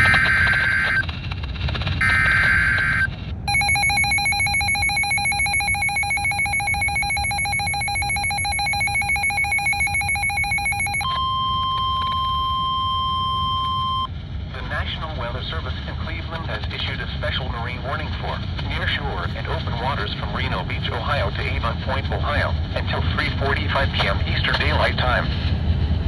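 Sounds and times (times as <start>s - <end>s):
data burst tone: 2.0s - 14.1s
steady alarm tone: 2.0s - 14.1s
wavering two-tone attention signal: 3.5s - 14.1s.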